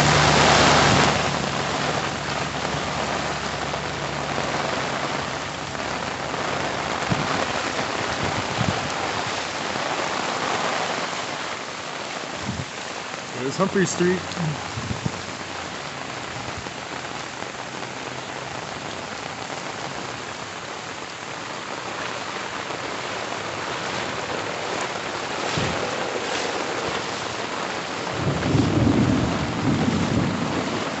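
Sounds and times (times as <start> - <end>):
heavy rain falling: 0.0 - 31.0
low rumble of thunder: 6.5 - 9.2, 14.7 - 15.3, 25.5 - 26.2, 28.1 - 31.0.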